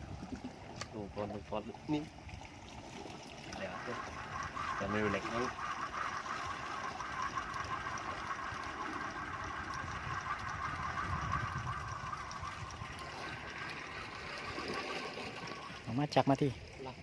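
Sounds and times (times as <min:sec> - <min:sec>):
boat engine running: 0:00.0 - 0:17.0
water noise: 0:00.0 - 0:17.0.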